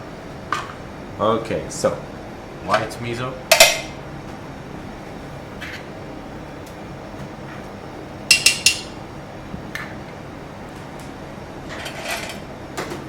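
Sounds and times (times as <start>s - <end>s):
kitchen background noise: 2.7s - 13.0s
utensils clinking against dishware: 8.3s - 9.0s.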